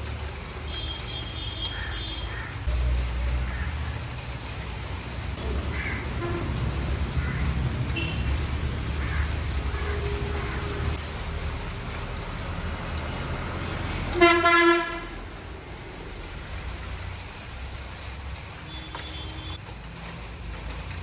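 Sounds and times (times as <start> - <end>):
low engine rumble: 0.0 - 21.0
vehicle horn honk: 6.1 - 6.8, 7.9 - 8.5, 14.2 - 15.2, 18.7 - 19.6.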